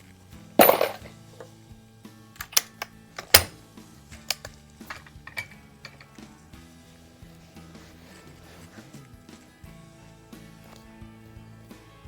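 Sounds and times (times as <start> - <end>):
clicks and clacks of handled gear: 2.4 - 6.2.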